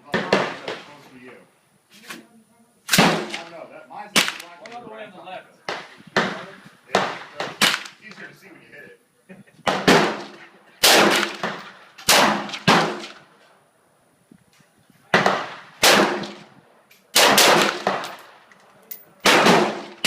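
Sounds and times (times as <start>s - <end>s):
rifle shots echoing: 2.9s - 4.6s, 5.7s - 8.1s, 9.6s - 13.3s, 15.1s - 16.5s, 17.1s - 18.5s, 19.2s - 20.0s.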